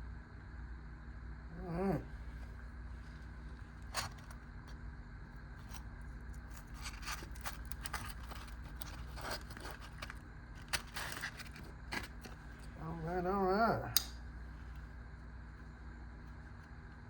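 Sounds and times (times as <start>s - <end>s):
steady low hum: 0.0s - 17.0s
packaging handled and opened: 6.4s - 12.6s.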